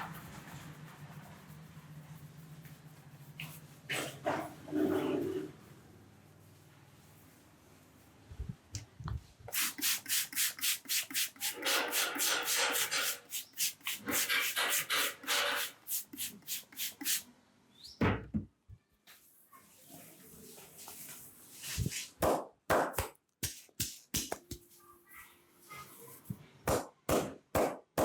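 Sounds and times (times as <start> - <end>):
hands striking head and hair: 22.2 - 24.7, 26.7 - 27.9.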